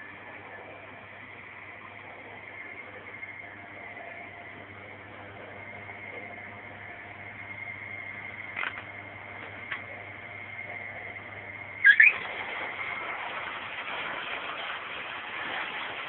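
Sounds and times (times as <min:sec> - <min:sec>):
metal lathe whine and hum: 0:00.0 - 0:11.8.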